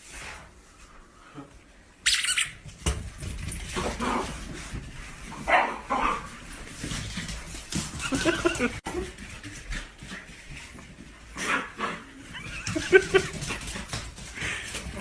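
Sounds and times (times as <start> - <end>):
dog barking: 5.5 - 6.2.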